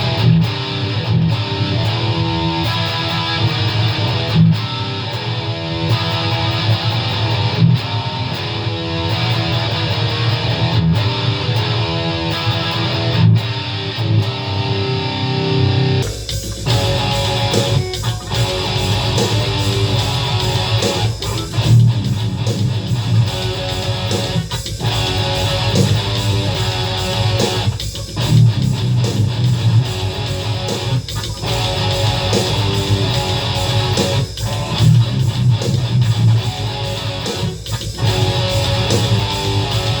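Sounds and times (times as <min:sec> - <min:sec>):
distorted electric guitar riffs: 0:00.0 - 0:40.0
drum machine beat: 0:16.0 - 0:40.0.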